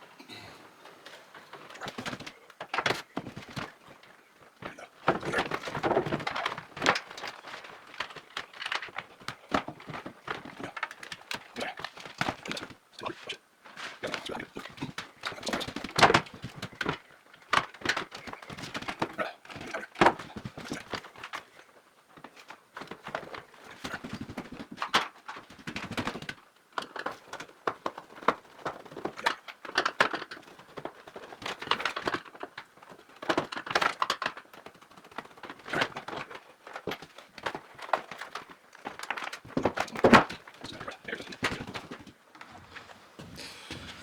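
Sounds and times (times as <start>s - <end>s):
cables rustling: 0.0s - 44.0s.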